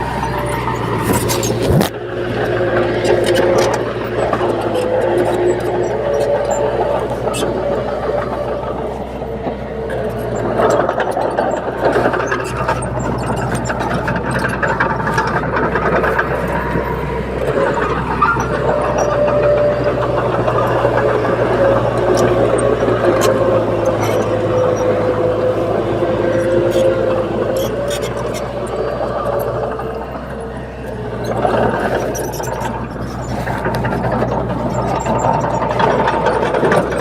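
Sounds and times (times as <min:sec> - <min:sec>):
bulldozer diesel engine running: 0:00.0 - 0:37.0.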